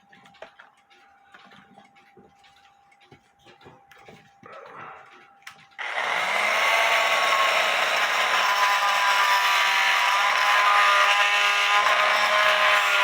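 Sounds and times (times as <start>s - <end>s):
oscillating multi-tool cutting: 5.8s - 13.0s.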